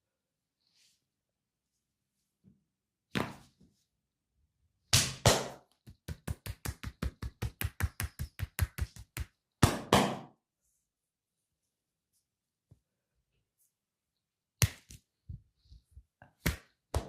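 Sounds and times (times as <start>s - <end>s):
hands slapping on body: 5.0s - 10.0s, 14.6s - 15.1s, 16.2s - 17.0s.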